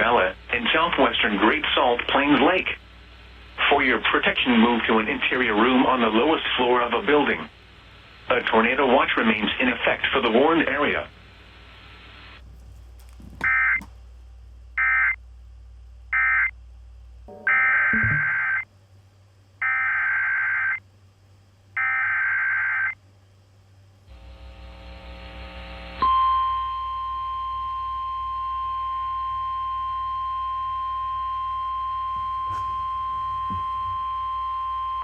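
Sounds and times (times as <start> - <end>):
steady warning alarm tone: 13.4 - 13.9, 14.8 - 15.2, 16.1 - 16.6, 17.3 - 18.6, 21.8 - 23.0, 26.0 - 35.0.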